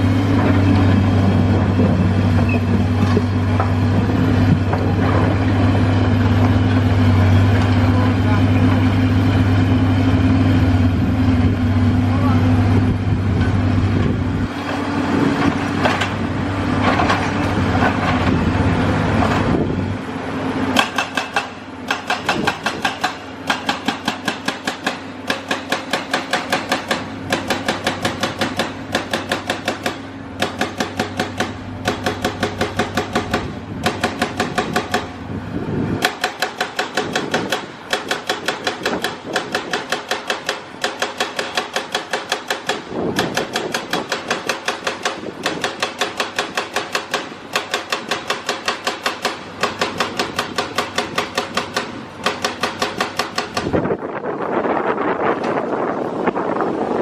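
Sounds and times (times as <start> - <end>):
excavator engine running: 0.0 - 57.0
hydraulic breaker hammering concrete: 20.8 - 35.2, 35.9 - 54.0.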